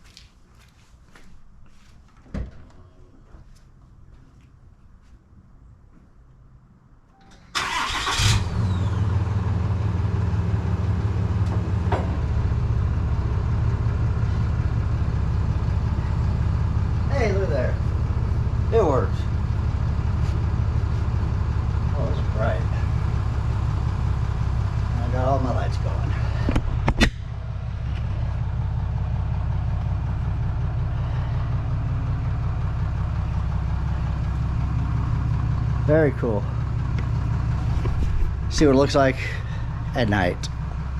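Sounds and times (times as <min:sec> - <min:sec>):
starter cranking engine: 0:07.5 - 0:09.0
diesel engine idling: 0:07.5 - 0:40.9.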